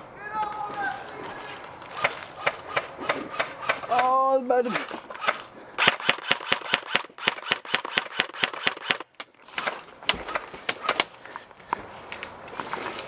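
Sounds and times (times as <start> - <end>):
airsoft gun shots: 2.0 - 4.1, 4.7 - 9.0.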